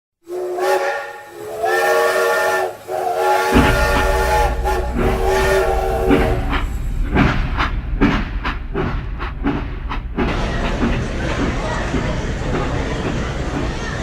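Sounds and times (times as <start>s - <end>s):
steam locomotive whistle blasts: 0.2s - 6.7s
train rumbling: 0.2s - 14.0s.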